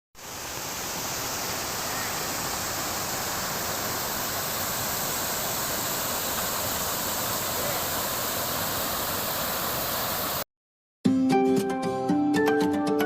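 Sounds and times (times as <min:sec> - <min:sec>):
waterfall rushing: 0:00.2 - 0:10.4.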